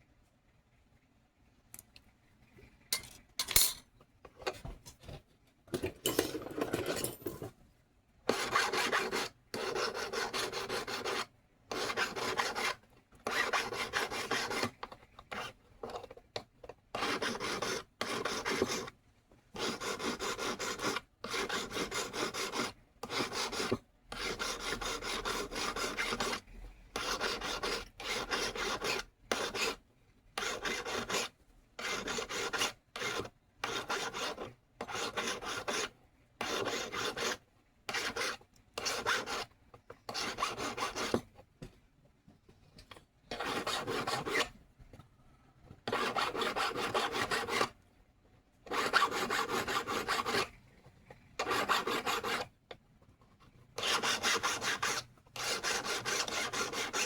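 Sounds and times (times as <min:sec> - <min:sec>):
hand file rasping on metal: 0:08.3 - 0:14.7, 0:16.9 - 0:18.9, 0:19.6 - 0:26.4, 0:27.0 - 0:29.8, 0:30.4 - 0:39.5, 0:40.1 - 0:41.2, 0:43.3 - 0:44.5, 0:45.8 - 0:47.7, 0:48.7 - 0:50.5, 0:51.4 - 0:52.5, 0:53.8 - 0:57.0.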